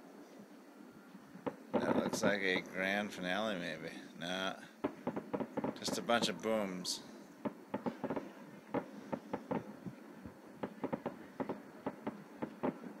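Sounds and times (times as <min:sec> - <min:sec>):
distant fireworks popping: 0:01.4 - 0:02.8, 0:04.6 - 0:06.8, 0:07.4 - 0:13.0.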